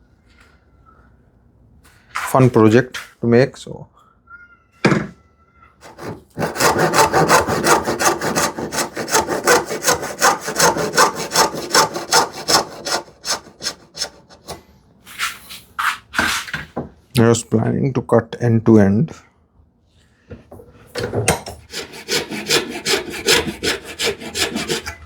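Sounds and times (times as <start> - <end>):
hand saw cutting wood: 5.8 - 14.6, 21.7 - 25.0.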